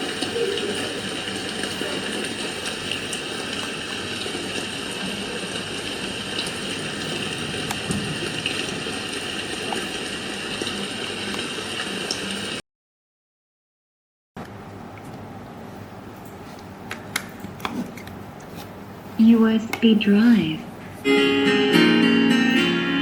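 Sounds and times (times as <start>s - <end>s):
rushing water sleep sound: 0.0s - 12.6s.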